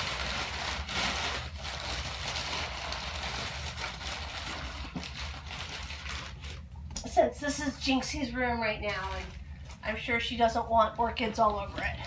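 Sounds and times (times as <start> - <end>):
packing wrappings rustling: 0.0 - 6.7, 8.9 - 9.8
steady low hum: 0.0 - 12.0.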